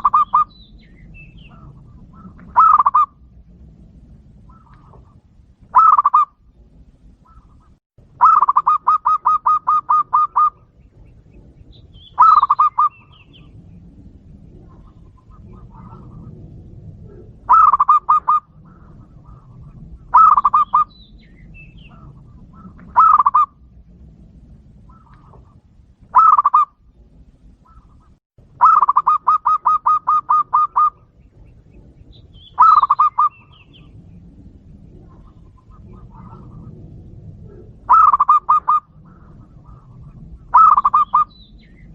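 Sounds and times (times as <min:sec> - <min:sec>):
faint low hum: 0:00.0 - 0:08.3
dove cooing in staccato bursts: 0:00.0 - 0:41.9.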